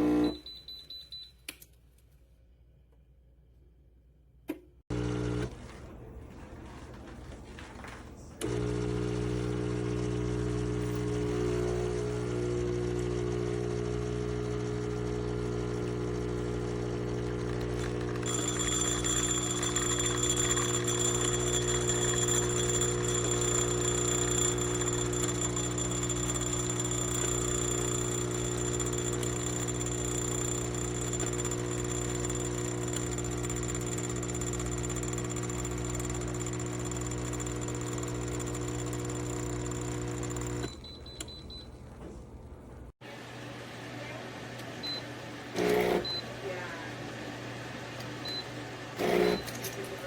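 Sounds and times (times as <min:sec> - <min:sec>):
espresso machine pump humming: 0:00.0 - 0:00.4, 0:04.9 - 0:05.5, 0:08.4 - 0:40.8, 0:44.8 - 0:46.6, 0:48.9 - 0:49.9.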